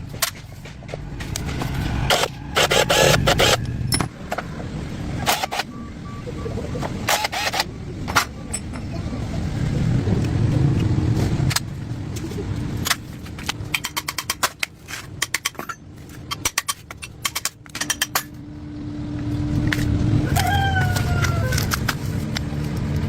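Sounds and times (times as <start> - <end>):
low rumble: 0.0 - 5.2
sharp metallic clicks and taps: 10.2 - 18.4.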